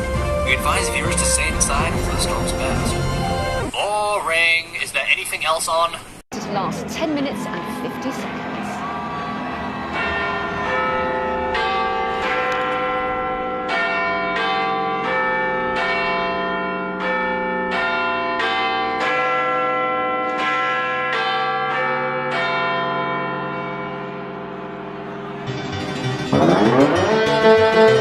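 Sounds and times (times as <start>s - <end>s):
bells struck: 0.0s - 3.6s, 9.4s - 28.0s.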